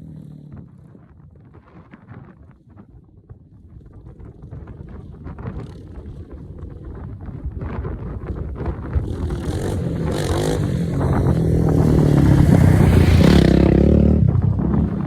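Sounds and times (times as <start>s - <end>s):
atv engine running: 4.0s - 15.0s.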